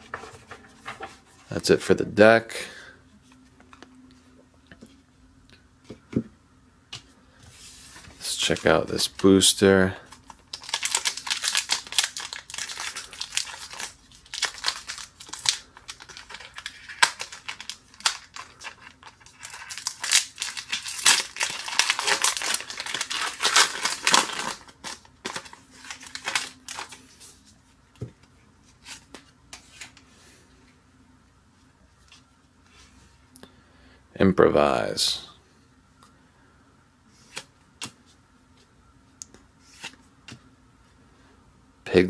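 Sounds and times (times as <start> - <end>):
plastic wrapper crinkling and tearing: 10.1 - 27.1.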